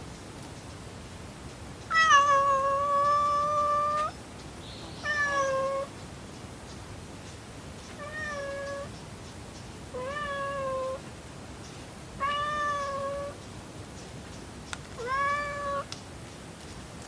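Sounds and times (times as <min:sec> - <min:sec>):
cat meowing: 0:01.9 - 0:04.1, 0:05.0 - 0:05.9, 0:08.0 - 0:08.9, 0:09.9 - 0:11.0, 0:12.2 - 0:13.4, 0:15.0 - 0:15.9.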